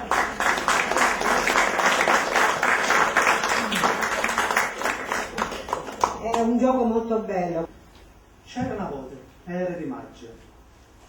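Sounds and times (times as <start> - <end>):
audience applauding: 0.0 - 6.5.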